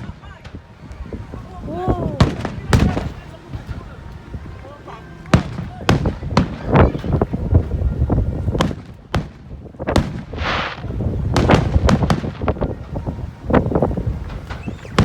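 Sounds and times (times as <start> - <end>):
fireworks bangs and booms: 0.0 - 3.9, 5.2 - 15.0
brief hiss: 10.3 - 10.9.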